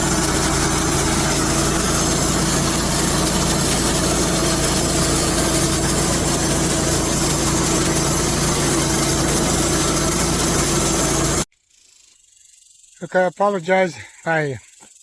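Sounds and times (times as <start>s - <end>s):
band sawmill cutting a log: 0.0s - 11.5s.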